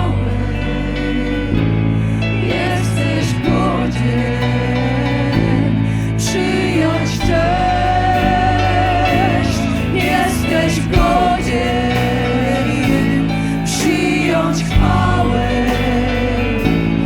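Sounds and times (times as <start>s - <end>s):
worship band playing slow song: 0.0s - 17.0s.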